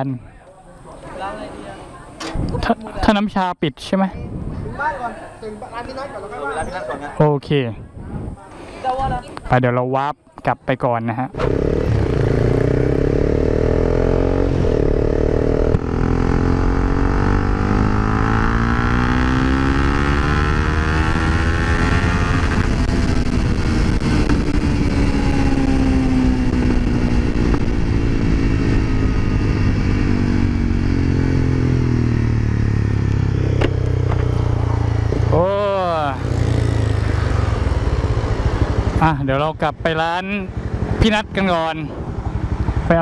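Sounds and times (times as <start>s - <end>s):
motorcycle engine running: 11.4s - 43.0s.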